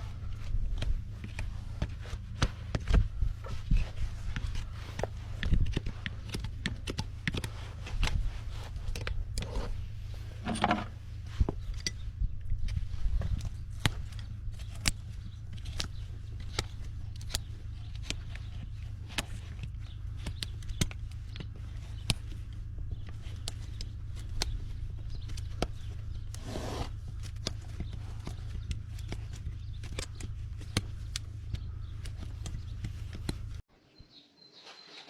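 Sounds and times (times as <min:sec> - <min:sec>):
steady low hum: 0:00.0 - 0:33.7
hoof work clicks and knocks: 0:00.2 - 0:33.6.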